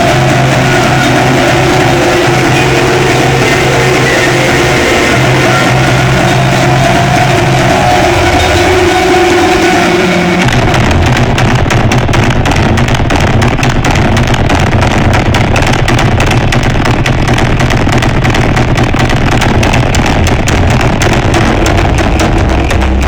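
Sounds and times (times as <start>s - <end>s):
heavy low drone: 0.0s - 23.0s
rapid clattering hits: 0.0s - 23.0s.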